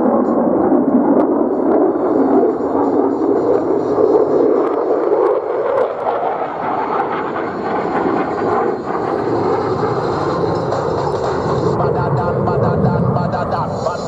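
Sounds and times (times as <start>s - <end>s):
jet engine rushing: 0.0s - 14.0s.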